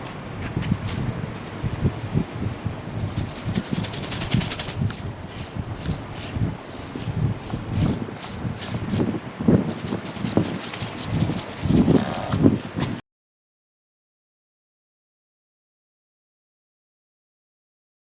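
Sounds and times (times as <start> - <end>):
buzzing servo wing flapping: 0.0 - 13.0
wind buffeting microphone: 0.0 - 13.0.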